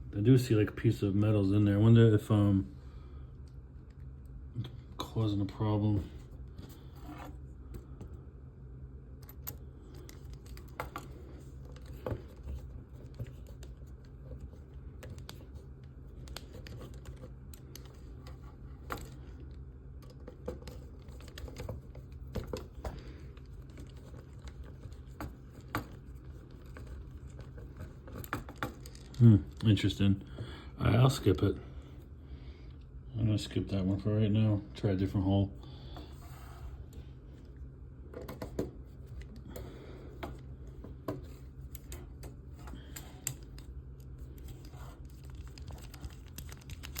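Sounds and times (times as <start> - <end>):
steady low hum: 0.0 - 47.0
small metal parts clicking and scraping: 41.7 - 47.0.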